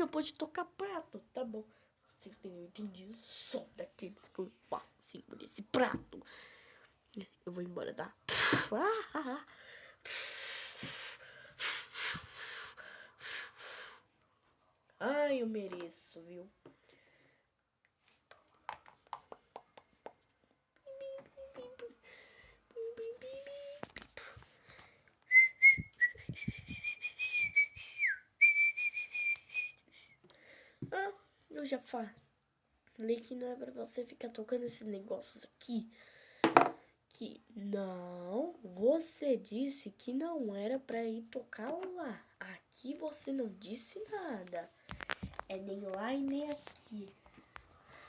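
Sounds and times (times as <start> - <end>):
loud breathy huffs: 9.5 - 14.1
high wavering whistle: 25.3 - 30.2
soft low thuds: 25.7 - 26.9.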